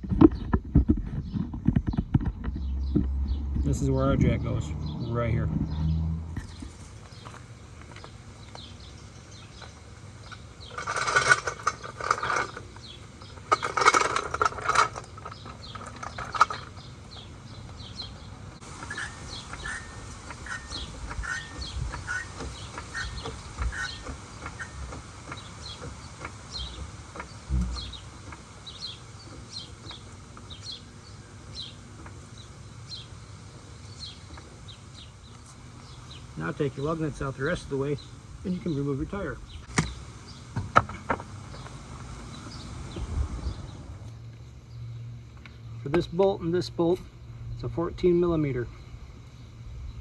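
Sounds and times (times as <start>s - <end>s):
small birds chirping: 0.0s - 50.0s.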